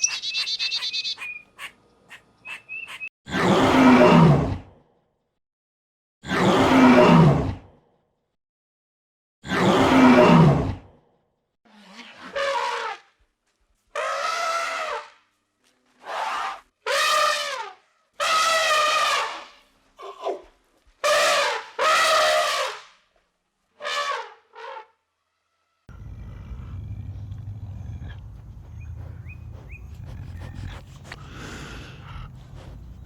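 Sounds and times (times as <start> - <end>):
bird chirps: 0.0 - 3.1, 26.8 - 31.1
low outdoor rumble: 25.9 - 33.0.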